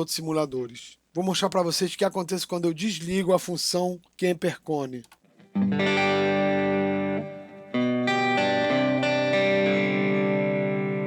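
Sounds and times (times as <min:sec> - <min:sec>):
electric guitar chords: 0:05.4 - 0:11.0.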